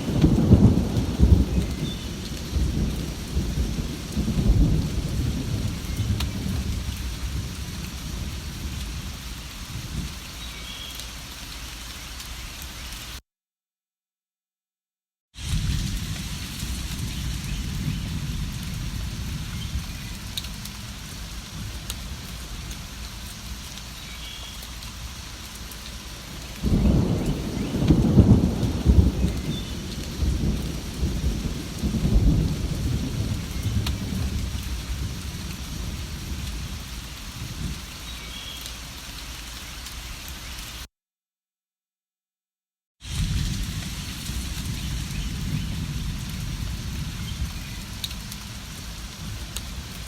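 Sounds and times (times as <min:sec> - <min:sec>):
thunder rolling: 0:00.0 - 0:09.1, 0:15.4 - 0:23.5, 0:26.5 - 0:36.8, 0:43.1 - 0:50.0
steady rain: 0:00.0 - 0:13.2, 0:15.4 - 0:40.9, 0:43.0 - 0:50.0.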